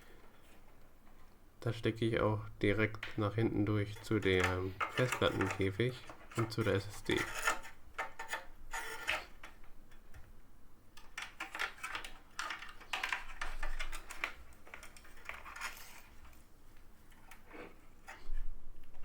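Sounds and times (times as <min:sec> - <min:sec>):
cables and connectors clicking: 0:04.0 - 0:06.6, 0:10.9 - 0:16.4.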